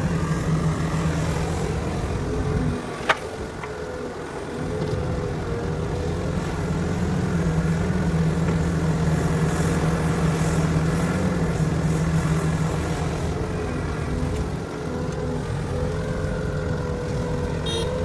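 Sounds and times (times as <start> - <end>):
heavy diesel engine under load: 0.0 - 18.0.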